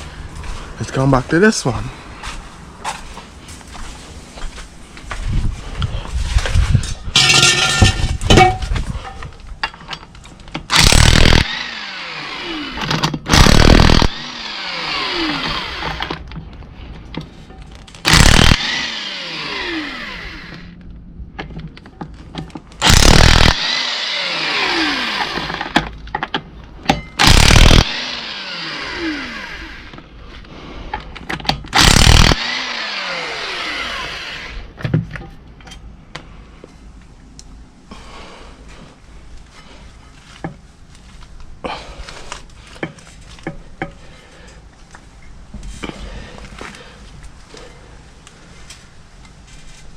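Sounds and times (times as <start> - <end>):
impact wrench driving bolts: 10.5 - 16.3, 18.0 - 20.6, 21.4 - 30.0, 31.3 - 34.6
tool spinning down whine: 10.7 - 16.2, 18.0 - 20.8, 22.8 - 25.9, 27.1 - 30.0, 31.7 - 34.8.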